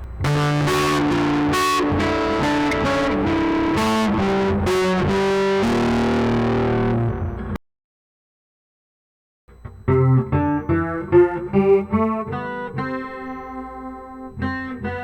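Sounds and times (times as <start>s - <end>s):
electric guitar melodic phrase: 0.0s - 7.6s, 9.7s - 15.0s.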